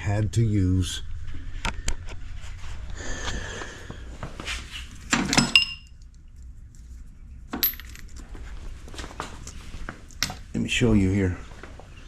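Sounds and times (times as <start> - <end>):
metal tools clinking: 5.1 - 5.9, 7.5 - 8.2
metallic ring: 5.4 - 5.9.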